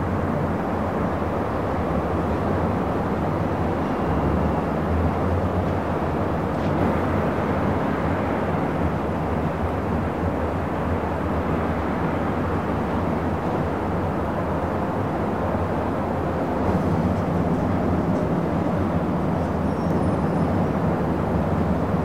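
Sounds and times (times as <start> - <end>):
traffic rumble: 0.0 - 22.0
faint high squeaks: 19.6 - 20.5.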